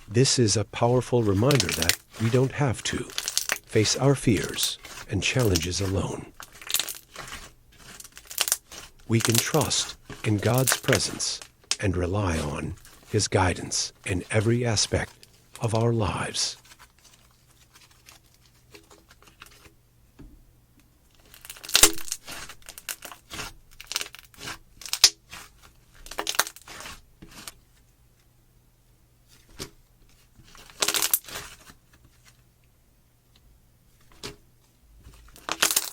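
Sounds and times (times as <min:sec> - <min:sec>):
slime crackling and popping: 0:01.2 - 0:15.2, 0:21.2 - 0:26.9, 0:35.3 - 0:35.9.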